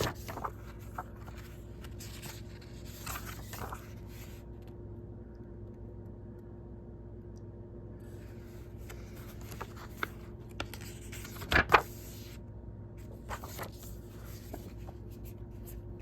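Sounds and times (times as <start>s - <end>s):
paper booklet rustling: 0.0s - 4.8s, 8.0s - 12.4s, 13.0s - 16.0s.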